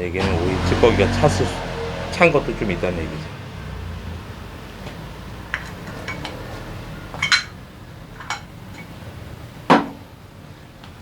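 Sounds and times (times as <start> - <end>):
metal engine parts and tools clinking: 5.5 - 7.6.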